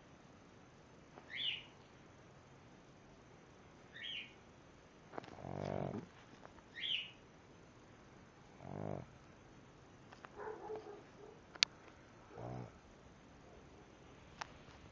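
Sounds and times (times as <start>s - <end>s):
dog snoring: 5.1s - 6.1s, 8.5s - 9.2s, 12.3s - 12.8s.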